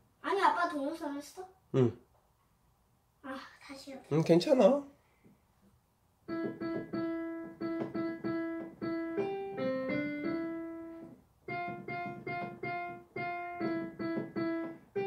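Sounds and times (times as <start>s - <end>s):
piano melody: 6.3s - 15.0s.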